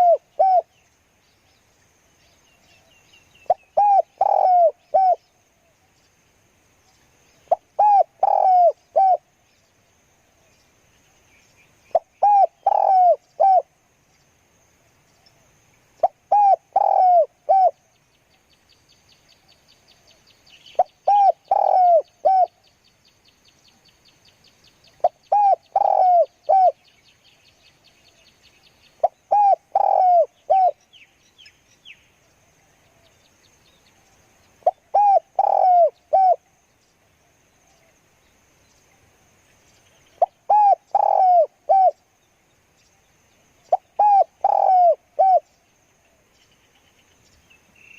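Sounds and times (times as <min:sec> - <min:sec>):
dove cooing: 0:00.0 - 0:00.7, 0:03.5 - 0:05.2, 0:07.5 - 0:09.2, 0:11.9 - 0:13.7, 0:16.0 - 0:17.8, 0:20.8 - 0:22.5, 0:25.0 - 0:26.9, 0:29.0 - 0:30.8, 0:34.6 - 0:36.5, 0:40.2 - 0:42.0, 0:43.7 - 0:45.5.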